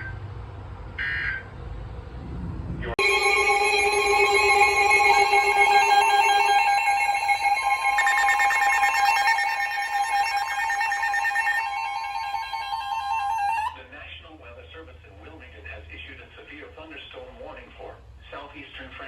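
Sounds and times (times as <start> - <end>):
electronic alarm tones: 3.0 - 13.8
pulsing beep: 3.0 - 13.8.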